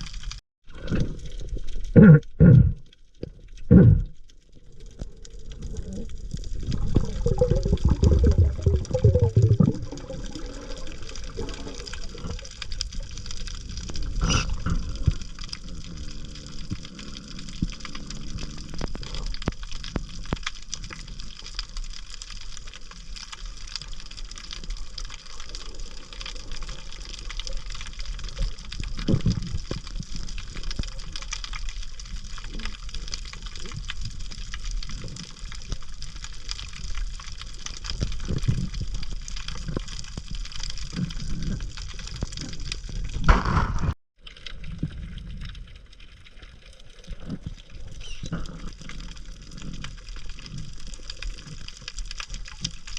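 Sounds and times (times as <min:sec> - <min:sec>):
fine underwater clicks and crackles: 0:00.0 - 0:52.9
underwater wash: 0:00.0 - 0:52.9
water surges: 0:03.7 - 0:43.2.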